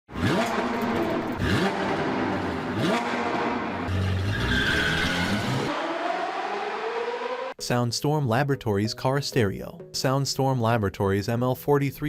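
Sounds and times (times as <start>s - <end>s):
engine revving: 0.1s - 7.6s.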